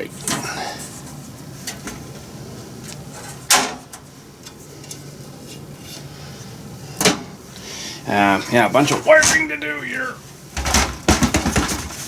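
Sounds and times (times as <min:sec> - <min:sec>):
computer case panel clunking shut: 0:03.5 - 0:04.0, 0:10.6 - 0:12.0.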